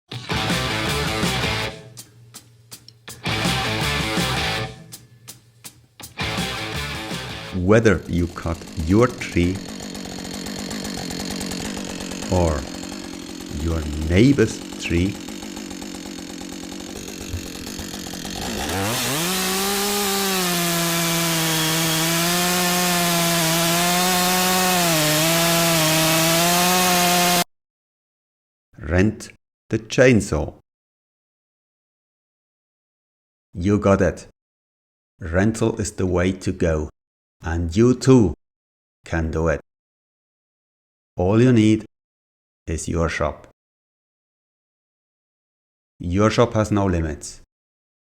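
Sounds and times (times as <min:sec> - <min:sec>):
chainsaw cutting wood: 0:00.1 - 0:02.1, 0:03.1 - 0:05.0, 0:06.0 - 0:27.5.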